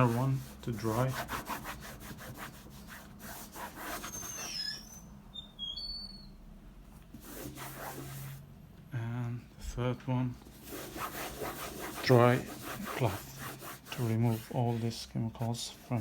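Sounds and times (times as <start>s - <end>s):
cloth rubbing on leather: 0.0s - 4.6s, 7.1s - 8.4s, 10.4s - 16.0s
high squeaks: 4.0s - 6.4s.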